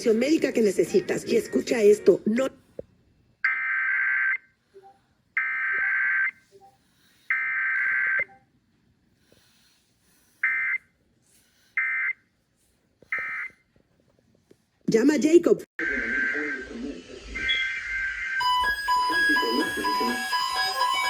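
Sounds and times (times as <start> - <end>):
two-tone digital data bursts: 15.8 - 21.0.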